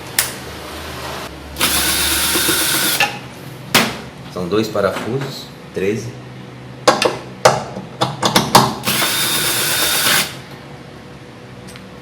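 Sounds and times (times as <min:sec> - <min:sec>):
power drill-driver spinning: 0:01.6 - 0:03.0, 0:08.8 - 0:10.4.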